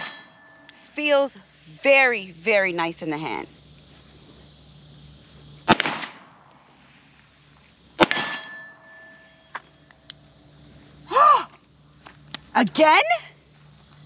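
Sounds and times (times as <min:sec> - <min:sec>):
metallic ringing: 0:00.0 - 0:01.9, 0:08.0 - 0:10.0
pistol shots: 0:05.6 - 0:06.4, 0:08.0 - 0:08.5.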